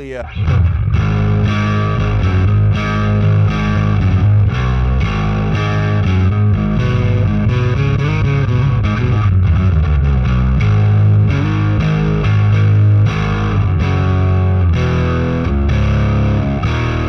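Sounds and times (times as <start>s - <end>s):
distorted bass guitar: 0.0s - 17.0s.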